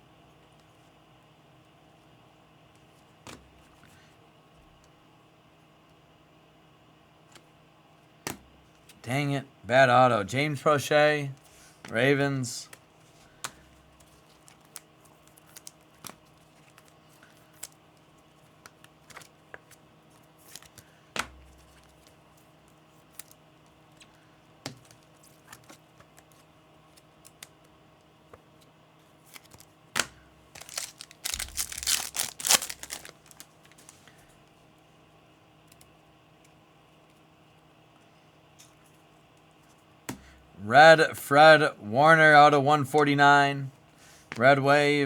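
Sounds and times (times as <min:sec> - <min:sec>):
light clicks and taps of cards: 0:13.4 - 0:19.8
foil card pack tearing: 0:29.3 - 0:34.0.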